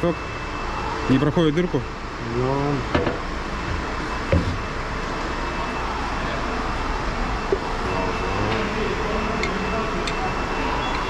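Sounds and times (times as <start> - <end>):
workshop background noise: 2.4 - 11.0.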